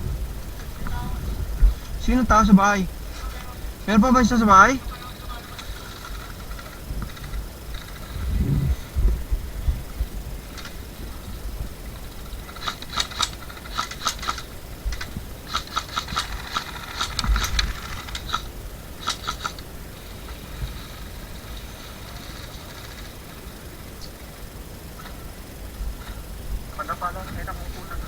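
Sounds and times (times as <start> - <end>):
low rumble: 0.0 - 12.5
airsoft guns firing: 1.7 - 8.2, 10.4 - 23.6.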